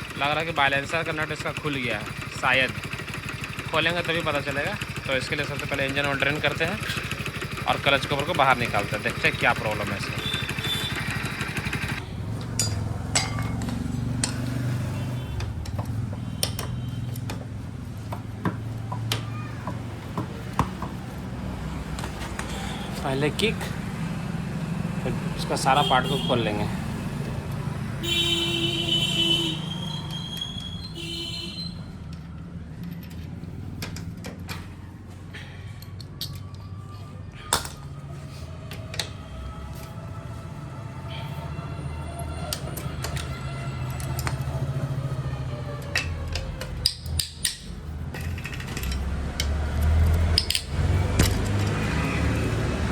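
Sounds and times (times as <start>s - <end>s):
hand tools clicking on metal: 11.9s - 14.8s, 15.4s - 21.0s, 42.5s - 44.8s, 45.7s - 52.0s
metallic tool clicks: 45.8s - 51.8s.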